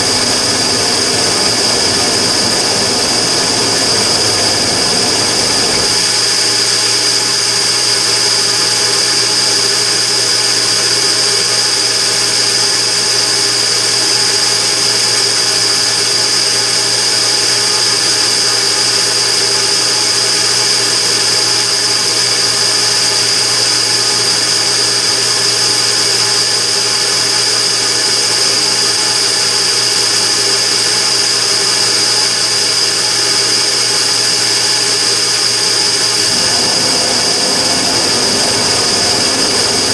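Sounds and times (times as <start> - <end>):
burner rushing noise: 0.0 - 6.8, 35.8 - 39.9.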